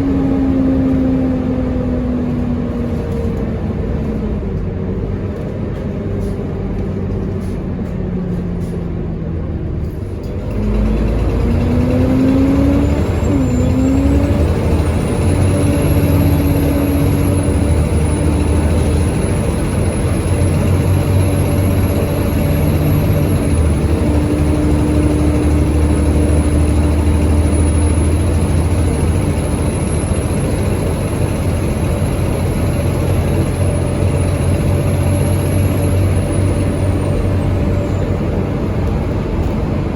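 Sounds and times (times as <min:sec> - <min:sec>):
bus diesel engine under load: 0:00.0 - 0:39.9
high turbo whistle: 0:11.9 - 0:38.4.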